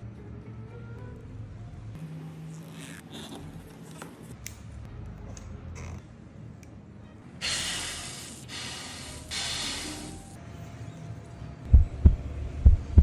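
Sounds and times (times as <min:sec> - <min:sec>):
rushing air bursts: 0:07.4 - 0:10.4.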